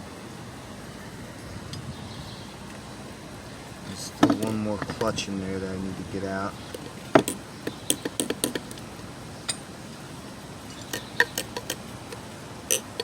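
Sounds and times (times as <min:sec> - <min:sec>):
metallic clicks and clinks: 0:10.7 - 0:13.0.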